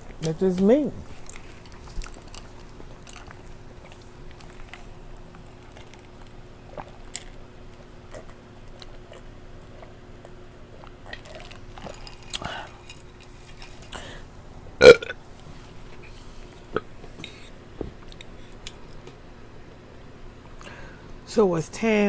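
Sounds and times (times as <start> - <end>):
chewing food: 1.0 - 14.0, 15.9 - 19.0.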